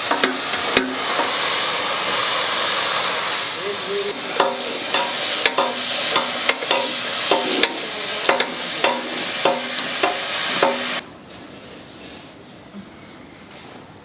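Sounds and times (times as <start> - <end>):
electric arc welding crackle: 0.0 - 11.0
welder hum: 0.0 - 11.0.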